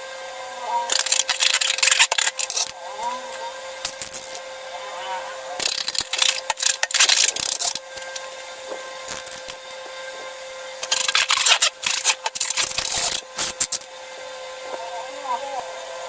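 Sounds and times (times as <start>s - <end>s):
sticky clicks: 0.9s - 2.8s, 3.8s - 4.4s, 5.6s - 8.3s, 9.0s - 9.8s, 10.8s - 13.9s.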